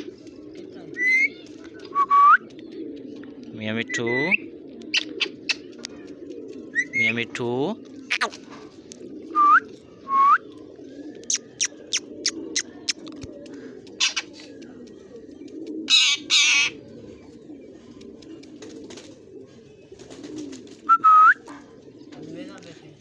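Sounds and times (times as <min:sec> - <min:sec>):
pigeons cooing: 0:00.0 - 0:23.0
parrot clicking: 0:11.2 - 0:16.7
parrot screeching: 0:15.9 - 0:16.8.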